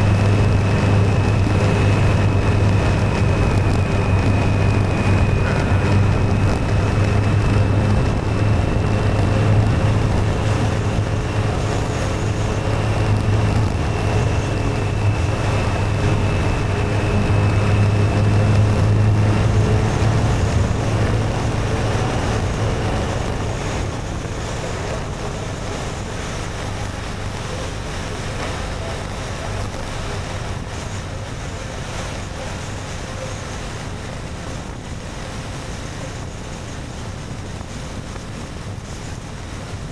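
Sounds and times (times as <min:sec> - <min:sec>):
motorcycle engine running: 0:00.0 - 0:27.6
wind rushing over microphone: 0:00.0 - 0:39.9.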